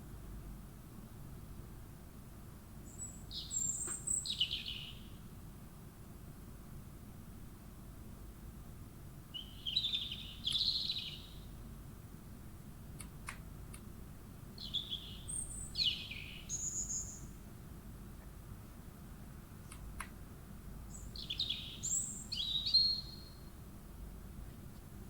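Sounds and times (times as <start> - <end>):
low background hiss: 0.0 - 25.0
bird chirping: 2.9 - 5.1, 9.4 - 11.5, 14.6 - 17.4, 20.9 - 23.5.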